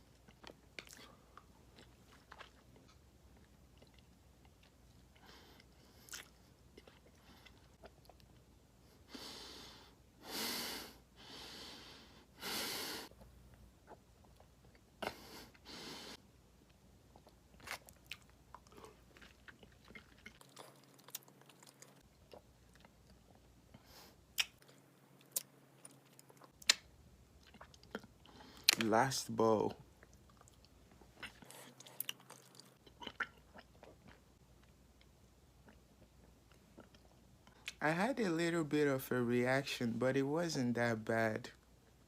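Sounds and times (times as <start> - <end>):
wet chewing and crunching: 0.0 - 8.6, 16.6 - 28.9, 29.7 - 37.8.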